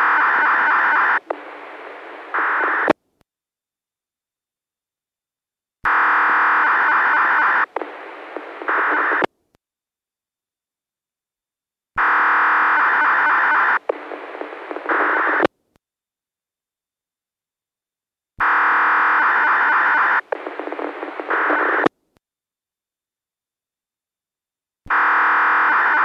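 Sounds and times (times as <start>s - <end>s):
steady radio tone: 0.0s - 3.0s, 5.9s - 9.3s, 12.4s - 15.5s, 19.0s - 21.9s.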